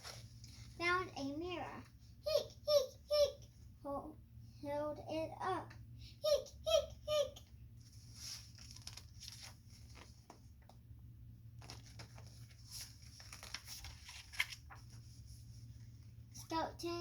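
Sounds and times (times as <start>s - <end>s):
soft handling rustles: 0.0s - 0.8s, 7.8s - 10.9s, 11.5s - 16.5s
low steady hum: 0.0s - 17.0s.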